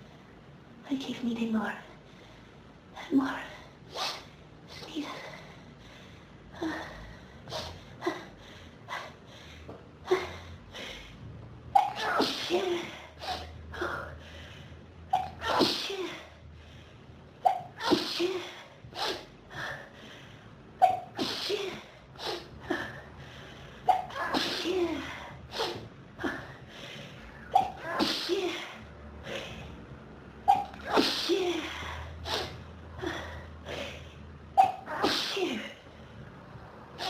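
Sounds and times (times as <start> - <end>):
person sneezing: 20.8 - 22.4, 23.8 - 25.8, 27.4 - 28.7, 30.5 - 32.6, 34.6 - 35.8.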